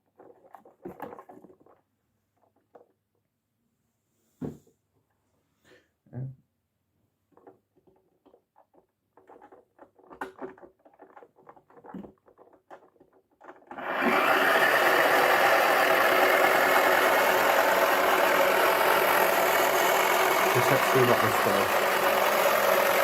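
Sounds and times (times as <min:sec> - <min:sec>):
plastic clicks and knocks: 0:07.3 - 0:13.8
toy motor whirring: 0:13.0 - 0:23.0.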